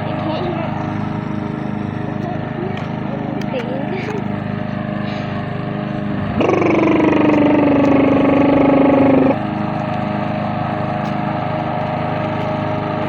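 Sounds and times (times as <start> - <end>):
lawn mower engine running: 0.0 - 13.0
loud high tone dropping in pitch: 6.2 - 9.4.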